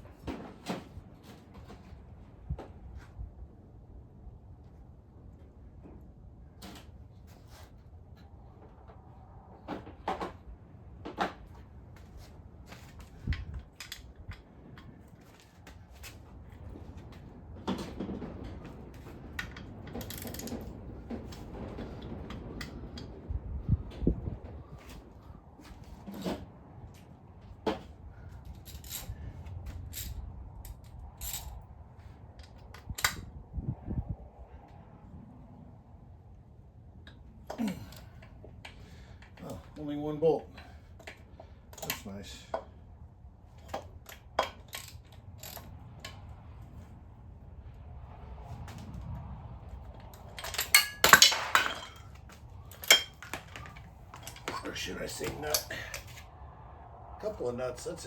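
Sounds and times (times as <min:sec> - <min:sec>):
tools and engine parts clinking: 0:12.2 - 0:16.2, 0:17.0 - 0:23.1, 0:27.7 - 0:31.6, 0:37.1 - 0:39.7, 0:40.5 - 0:42.8, 0:43.6 - 0:46.2, 0:50.0 - 0:56.3
metal tools clanking on engine parts: 0:50.2 - 0:56.2.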